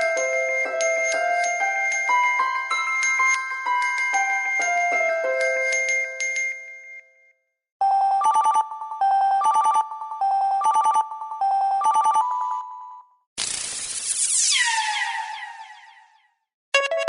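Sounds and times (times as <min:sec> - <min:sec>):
chiming mallet-like ringtone melody: 0:00.0 - 0:07.2, 0:07.8 - 0:13.1
phone ringtone tone and trill: 0:07.8 - 0:13.1.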